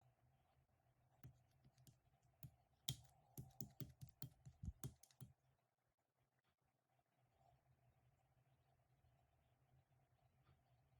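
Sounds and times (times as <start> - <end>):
light clicks and taps: 2.9 - 5.3.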